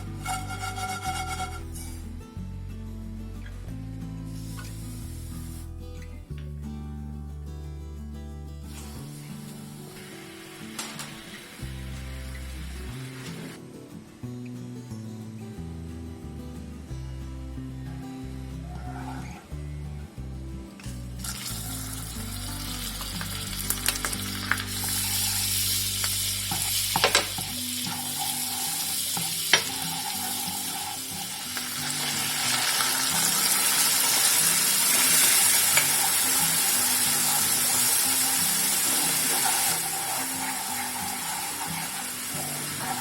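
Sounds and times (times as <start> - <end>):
food sizzling in oil: 0.0 - 1.9, 8.7 - 13.6, 21.2 - 43.0.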